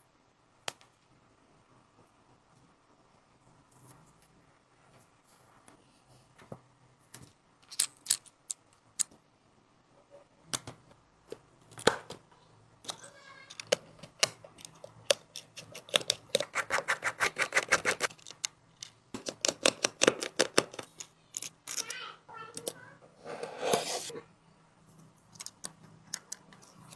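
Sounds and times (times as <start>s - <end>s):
small tools clicking on phone: 12.8s - 22.8s.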